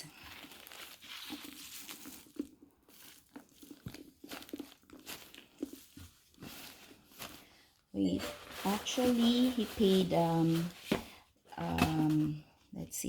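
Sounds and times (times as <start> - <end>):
paper packaging rustling: 0.0 - 12.4.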